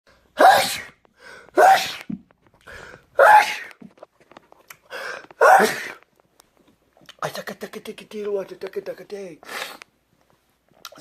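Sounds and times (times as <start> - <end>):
person sneezing: 0.4 - 1.0, 1.6 - 2.1, 3.2 - 3.7, 5.4 - 6.0
person breathing in: 1.2 - 1.6, 2.6 - 3.2, 4.8 - 5.4.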